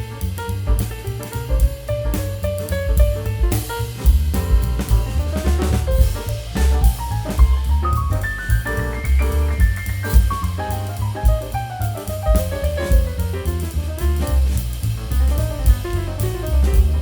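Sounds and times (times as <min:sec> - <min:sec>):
jazzy instrumental music: 0:00.0 - 0:17.0.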